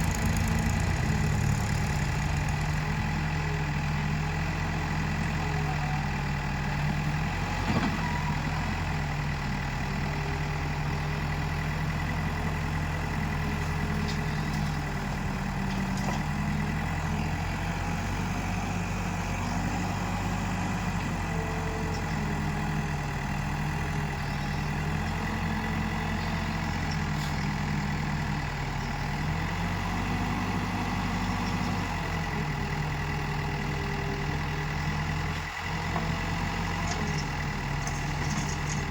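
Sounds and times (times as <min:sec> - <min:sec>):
backhoe diesel engine working: 0:00.0 - 0:38.9.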